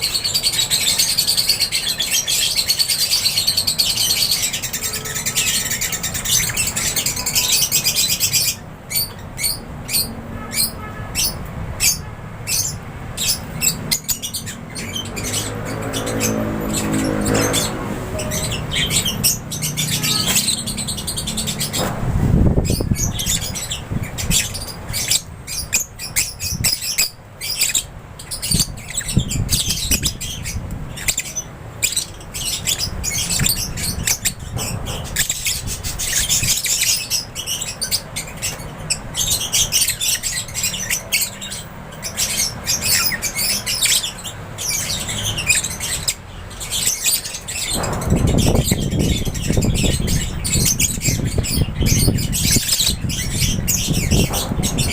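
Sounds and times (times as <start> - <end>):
lovebirds chirping and squawking: 0.0 - 54.9
low rumbles: 47.5 - 54.9.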